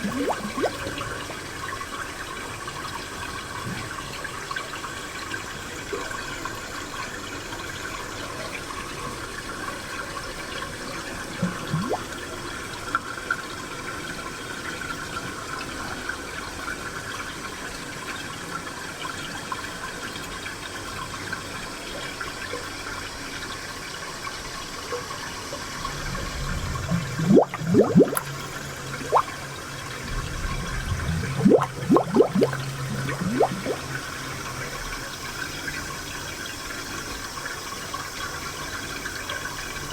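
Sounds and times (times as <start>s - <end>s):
bubbling gurgling plops: 0.0s - 1.6s, 11.4s - 12.2s, 25.9s - 34.6s
spring water flowing: 0.0s - 1.6s, 11.4s - 12.1s, 25.8s - 35.5s.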